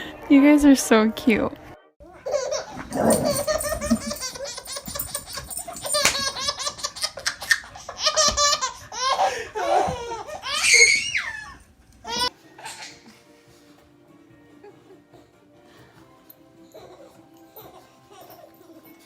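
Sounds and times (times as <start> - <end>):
baby laughing: 2.0 - 13.2
baby squealing: 2.2 - 13.0.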